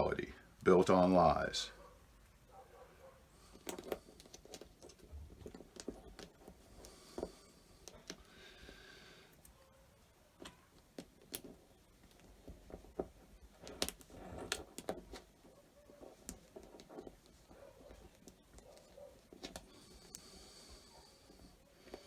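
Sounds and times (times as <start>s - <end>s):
handling rustle: 9.4s - 22.0s.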